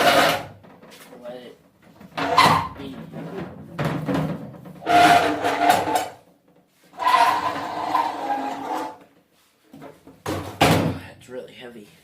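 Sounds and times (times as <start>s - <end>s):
heavy appliance scraping floor: 0.0s - 0.5s, 4.8s - 6.1s, 6.9s - 9.0s.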